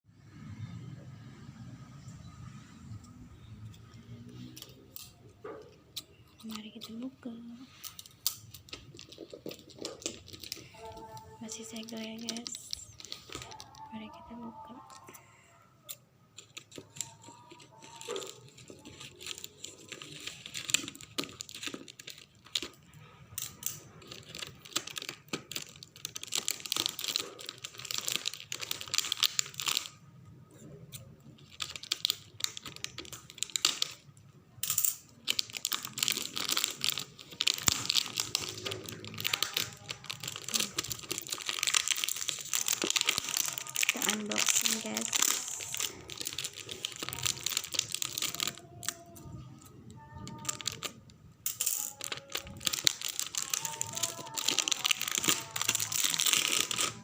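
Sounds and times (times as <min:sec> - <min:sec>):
plastic wrap tearing and crinkling: 0:07.7 - 0:15.1, 0:16.4 - 0:30.0, 0:30.9 - 0:34.1, 0:35.1 - 0:51.1, 0:51.8 - 0:57.0.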